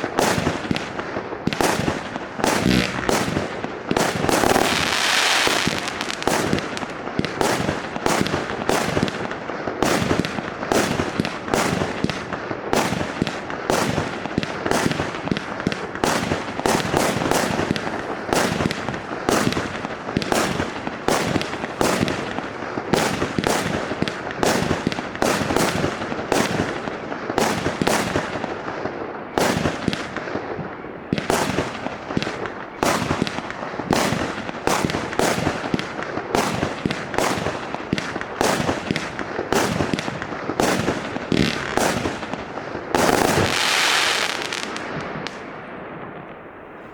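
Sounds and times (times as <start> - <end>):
fireworks cake firing: 1.6 - 7.6, 34.0 - 45.4
firework bursts: 2.4 - 6.8, 38.5 - 45.2.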